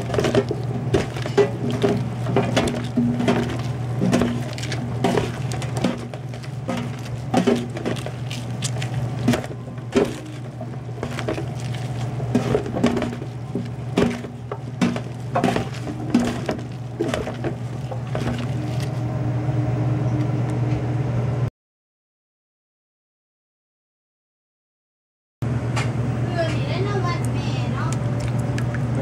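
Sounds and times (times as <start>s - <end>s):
dishes and utensils clattering: 0.0s - 19.0s
steady low hum: 0.0s - 21.5s.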